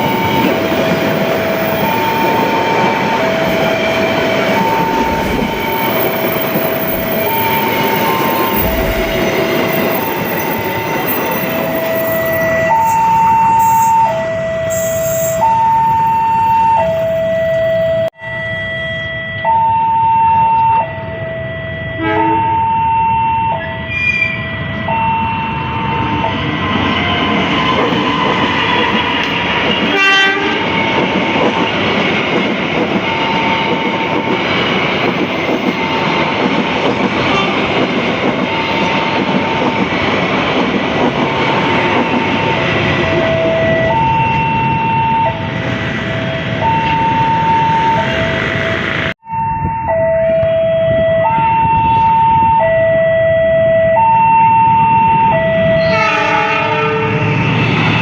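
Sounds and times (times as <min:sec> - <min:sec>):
train rumble and wheel clatter: 0:00.0 - 0:17.7, 0:24.6 - 0:49.2, 0:54.7 - 0:58.0
train horn toot: 0:20.9 - 0:22.8, 0:23.5 - 0:24.9, 0:29.8 - 0:30.8, 0:37.2 - 0:37.8, 0:55.6 - 0:57.3.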